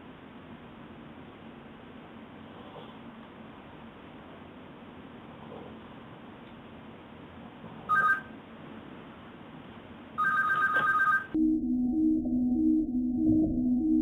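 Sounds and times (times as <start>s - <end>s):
electronic telephone ringer trilling: 7.9s - 8.3s, 10.2s - 11.4s
soft music: 11.4s - 14.0s.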